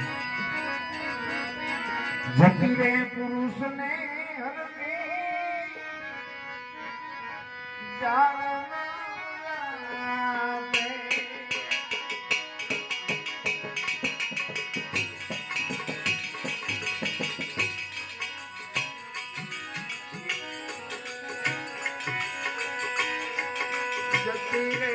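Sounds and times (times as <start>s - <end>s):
hand drums: 0.0s - 2.6s, 10.8s - 24.9s
bright metallic percussion: 0.0s - 3.1s, 10.6s - 24.9s
devotional music with held notes: 0.0s - 24.9s.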